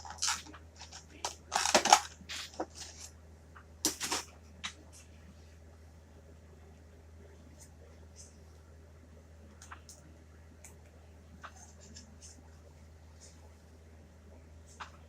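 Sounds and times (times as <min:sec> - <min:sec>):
plastic packaging crinkling: 0:00.0 - 0:03.1.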